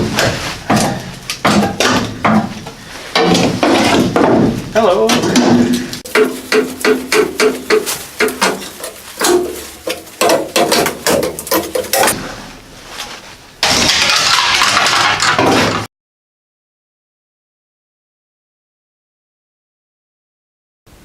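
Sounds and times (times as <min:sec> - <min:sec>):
hammer on sheet steel: 0:06.1 - 0:08.6.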